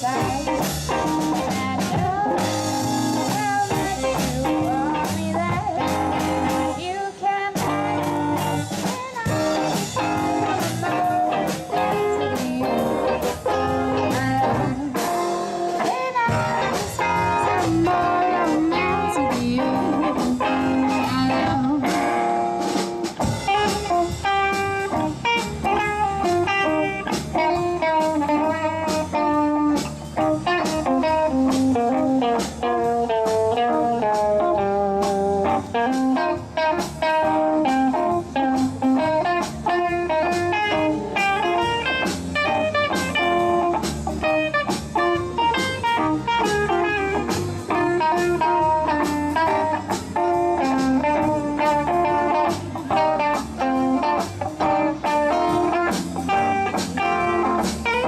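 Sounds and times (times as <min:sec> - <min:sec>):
electric guitar lead: 0:00.0 - 0:58.0
live blues band playing: 0:00.0 - 0:58.0.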